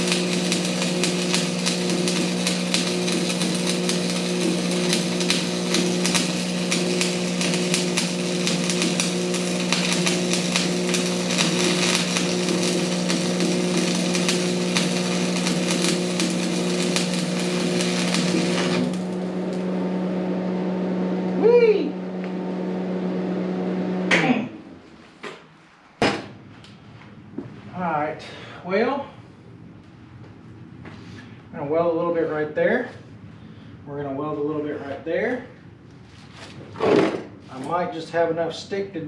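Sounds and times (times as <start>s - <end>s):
welding arc crackling: 0.0s - 20.4s
welding machine hum: 0.0s - 25.0s.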